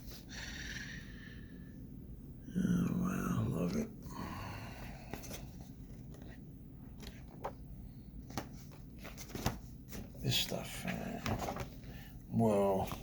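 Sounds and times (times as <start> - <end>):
low background hum: 0.0 - 13.0
book pages rustling: 5.0 - 12.1.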